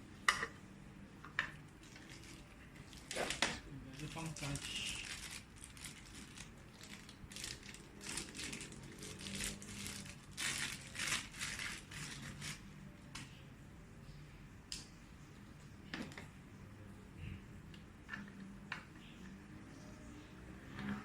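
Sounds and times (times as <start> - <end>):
packaging rustling and crinkling: 1.8 - 12.6.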